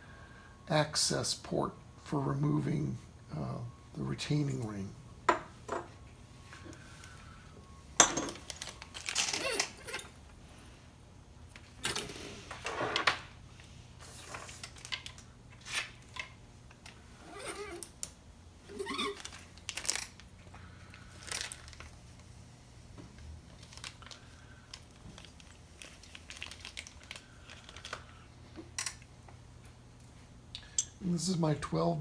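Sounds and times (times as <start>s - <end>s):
steady low hum: 0.0s - 12.6s
tools clicking and scraping: 8.1s - 10.2s
short squeaks: 18.7s - 19.4s.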